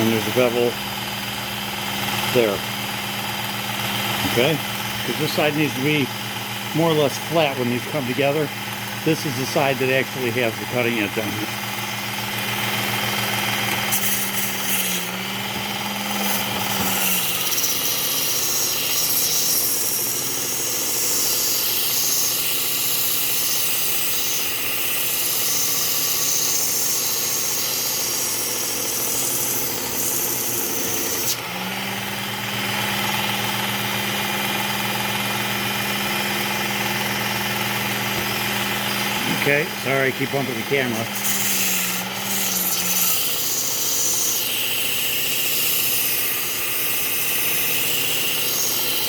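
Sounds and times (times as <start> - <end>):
belt sharpener motor hum: 0.0 - 49.0
steel blade grinding on belt: 4.2 - 31.4, 38.2 - 49.0.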